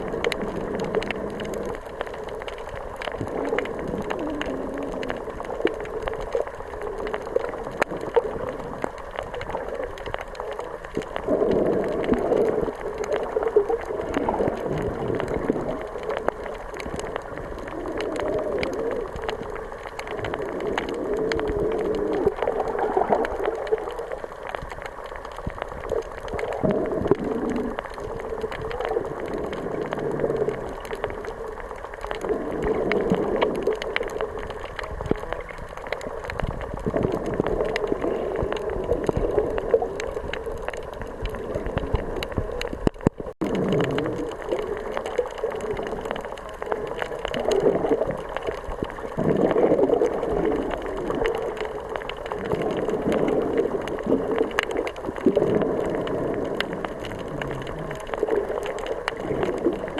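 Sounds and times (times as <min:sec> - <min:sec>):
sea water sloshing and gurgling: 0:00.0 - 0:59.9.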